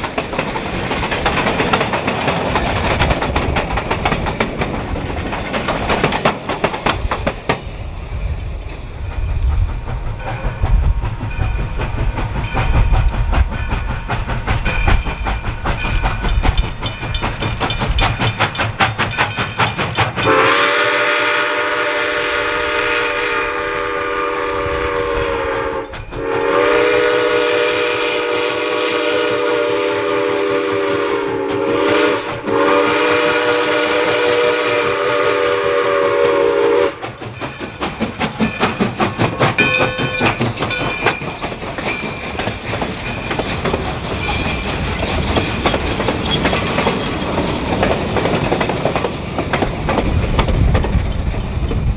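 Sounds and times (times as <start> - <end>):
wheels clicking over rail joints: 0.0 - 20.8, 36.2 - 51.9
steam train rumbling past: 0.0 - 51.9
steam whistle chord: 20.2 - 37.0.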